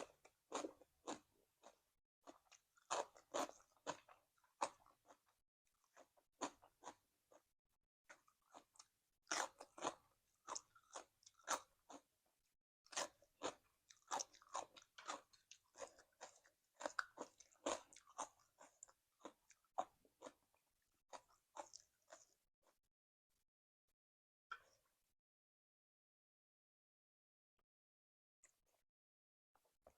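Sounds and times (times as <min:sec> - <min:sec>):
person chewing crunchy food: 0:00.0 - 0:07.5, 0:08.1 - 0:12.2, 0:12.8 - 0:22.8.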